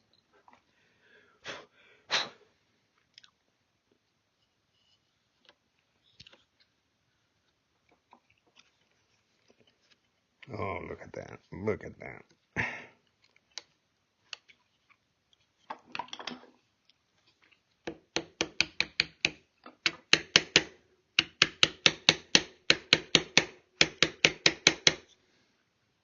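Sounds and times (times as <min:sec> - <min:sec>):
mallet tapping chisel into wood: 0:17.9 - 0:25.0.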